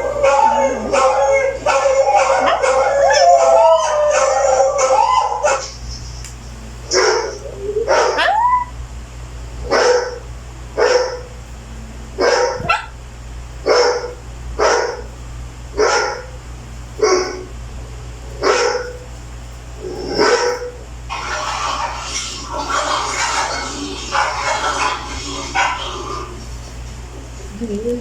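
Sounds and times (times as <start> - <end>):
dog barking: 0.0 - 5.8, 6.9 - 8.7, 9.6 - 10.2, 10.8 - 11.3, 12.2 - 13.0, 13.6 - 15.1, 15.8 - 16.4, 17.0 - 17.5, 18.4 - 19.1, 20.0 - 26.4
dog whining: 0.0 - 5.8, 6.9 - 8.8.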